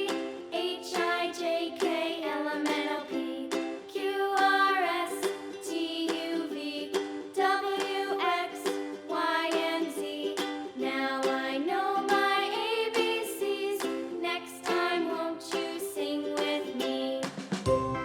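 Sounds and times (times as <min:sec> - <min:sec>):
cheerful instrumental music: 0:12.2 - 0:18.0.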